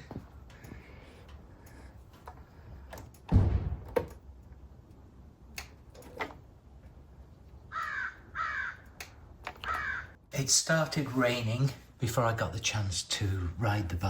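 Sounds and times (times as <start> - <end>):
dull thump: 3.3 - 4.2.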